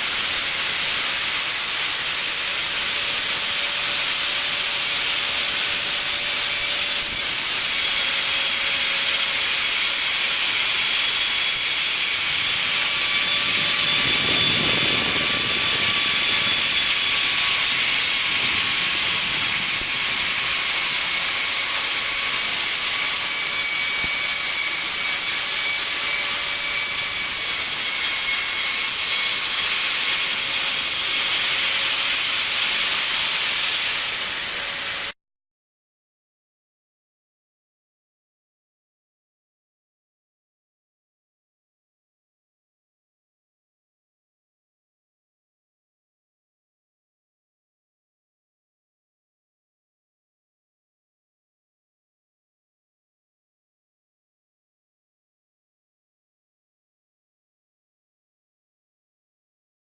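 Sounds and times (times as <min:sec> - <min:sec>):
router spindle hissing: 0:00.0 - 0:35.1.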